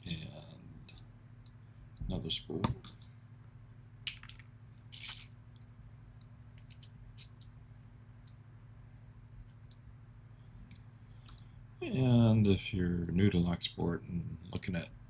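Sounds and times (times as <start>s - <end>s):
steady low hum: 0.0s - 15.0s
small metal clicks: 4.1s - 8.4s.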